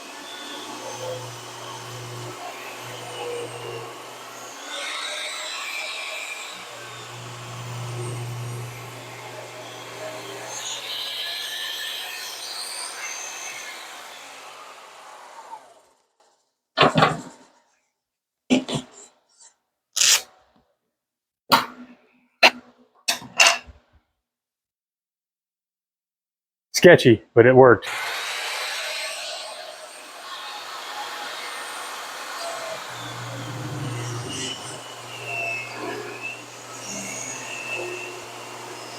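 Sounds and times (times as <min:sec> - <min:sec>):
hissing machine noise: 0:00.0 - 0:15.5, 0:27.9 - 0:38.9
table saw winding down: 0:00.0 - 0:16.1, 0:27.8 - 0:38.9.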